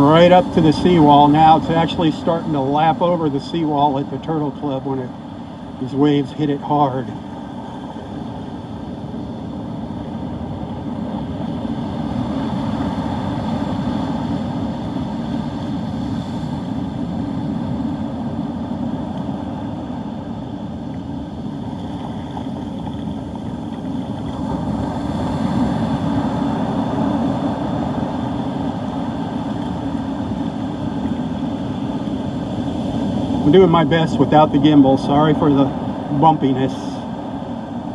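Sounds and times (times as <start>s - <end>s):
heavy surf breaking: 0.0s - 18.0s, 18.9s - 37.9s
wind rumble on microphone: 0.0s - 37.9s.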